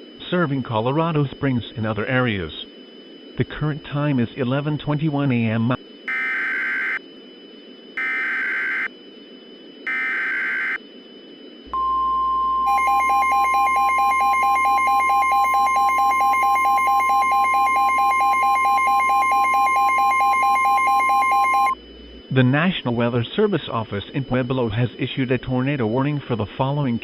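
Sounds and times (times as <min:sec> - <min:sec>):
steady alarm tone: 0:00.0 - 0:27.0
warbling digital data tones: 0:08.0 - 0:08.9, 0:09.8 - 0:10.9, 0:12.7 - 0:27.0.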